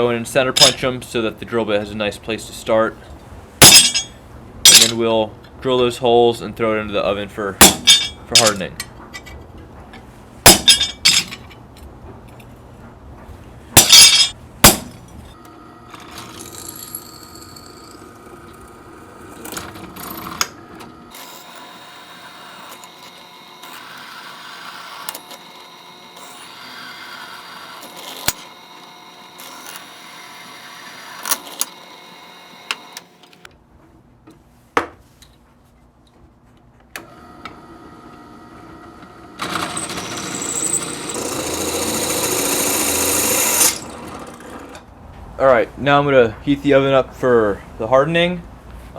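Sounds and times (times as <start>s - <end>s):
hammer striking metal punch: 3.6s - 4.1s, 7.6s - 8.6s, 10.4s - 11.3s, 13.8s - 15.0s
drill boring into metal: 21.1s - 33.3s, 39.4s - 44.4s.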